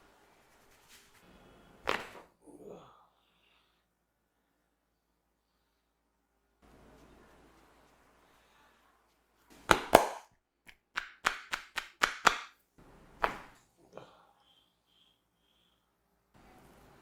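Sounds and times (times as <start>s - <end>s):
faint rustling: 0.0s - 2.3s
sharp cracks from hands: 9.7s - 12.6s.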